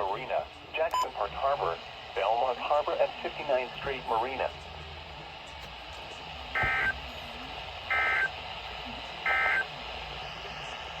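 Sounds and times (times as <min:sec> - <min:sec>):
steady radio hiss: 0:00.0 - 0:11.0
buzzy digital data squawks: 0:06.6 - 0:07.0, 0:07.9 - 0:08.4, 0:09.2 - 0:09.7.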